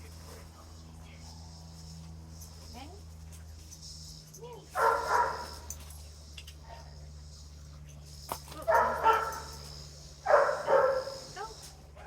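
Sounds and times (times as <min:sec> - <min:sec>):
dog barking: 0:04.8 - 0:05.6, 0:08.6 - 0:09.6, 0:10.2 - 0:11.4.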